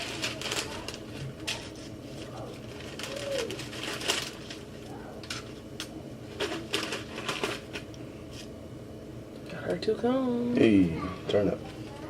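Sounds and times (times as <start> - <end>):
ice cream cones clicking and rustling: 0.0 - 8.5.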